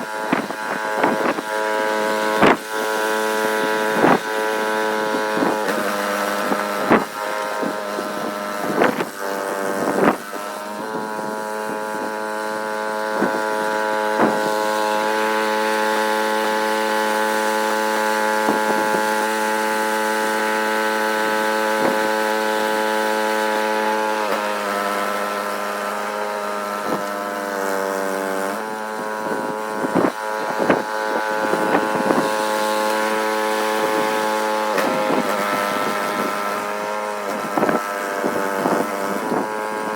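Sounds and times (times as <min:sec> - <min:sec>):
snowblower engine running: 0:00.0 - 0:39.9.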